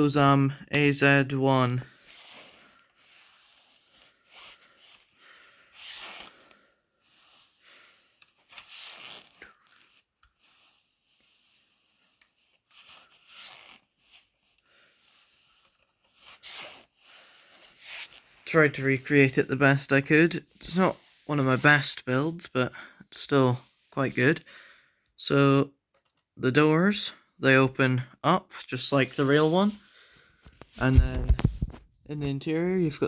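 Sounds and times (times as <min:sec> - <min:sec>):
person breathing softly: 0:01.8 - 0:08.4, 0:22.7 - 0:25.1, 0:29.7 - 0:30.6.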